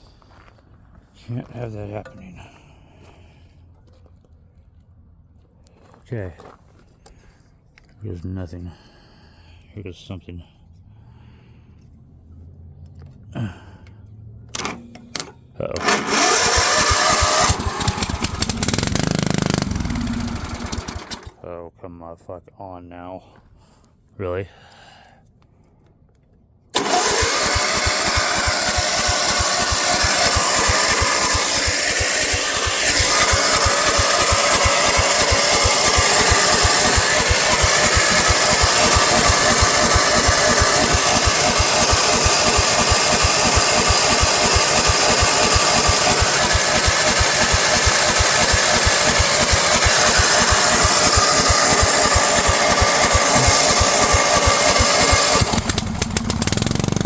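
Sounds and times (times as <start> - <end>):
small mower engine running: 14.5 - 21.4, 26.8 - 57.0.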